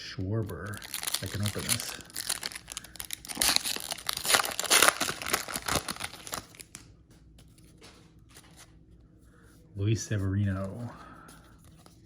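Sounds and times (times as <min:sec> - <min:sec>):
wrapper crinkling and tearing: 0:00.4 - 0:06.8.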